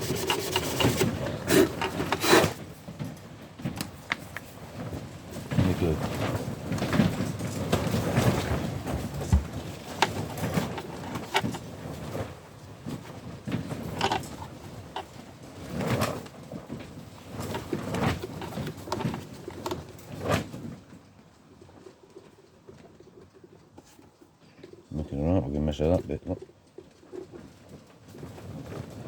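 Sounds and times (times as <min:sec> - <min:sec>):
plastic parts clicking and knocking: 0:00.0 - 0:04.5, 0:05.5 - 0:12.1, 0:13.0 - 0:20.5.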